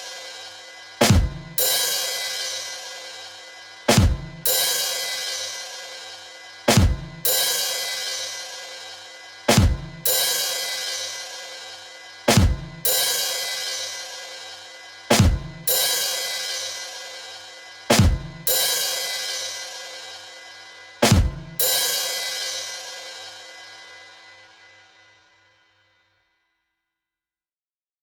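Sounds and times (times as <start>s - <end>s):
cymbal crash: 0.0s - 24.7s
short low drum hit: 1.0s - 1.6s, 3.9s - 4.3s, 9.5s - 10.0s, 12.3s - 12.8s, 15.1s - 15.6s, 17.9s - 18.3s, 21.0s - 21.6s.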